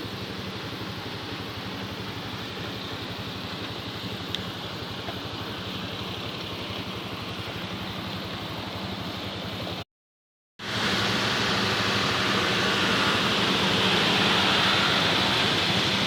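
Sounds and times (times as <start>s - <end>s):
train rumbling and hissing: 10.6s - 16.0s.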